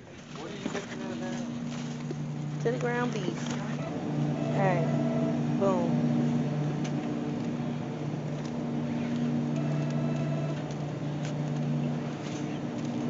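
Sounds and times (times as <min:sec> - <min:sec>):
steady low hum: 0:00.0 - 0:13.0
faint clicks and rattles: 0:08.3 - 0:13.0.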